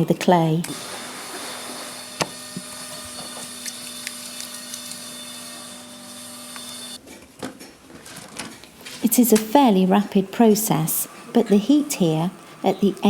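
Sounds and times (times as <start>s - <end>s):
machine hum with hiss: 0.6s - 7.0s, 9.8s - 13.0s.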